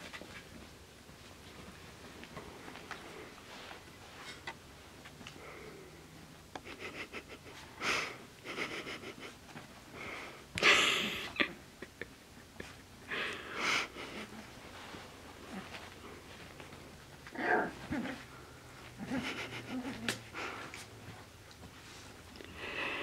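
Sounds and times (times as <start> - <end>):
puppy huffing and snorting: 17.6 - 20.8.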